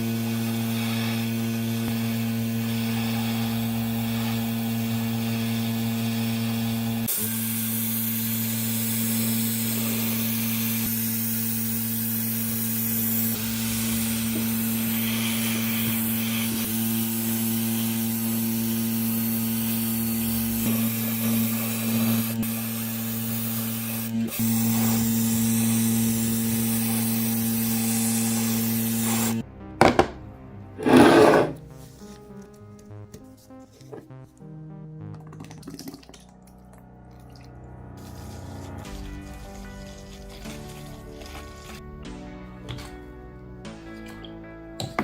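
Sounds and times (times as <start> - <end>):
compressed air spray hiss: 7.0 - 29.4.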